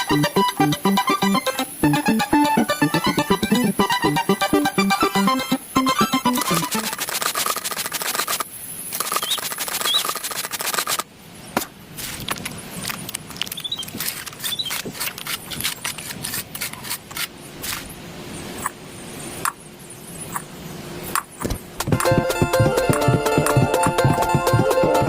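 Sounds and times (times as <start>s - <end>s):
scraping and rubbing: 6.6s - 8.4s, 9.0s - 11.0s, 13.8s - 17.9s.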